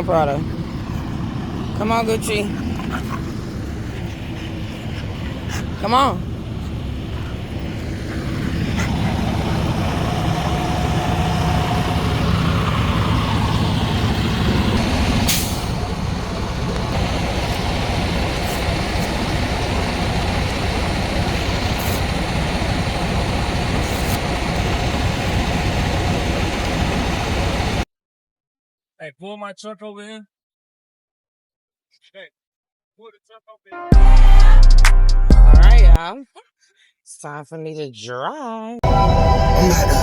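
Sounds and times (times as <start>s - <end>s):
diesel truck engines idling: 0.0s - 27.8s
air brake hiss: 15.2s - 15.8s.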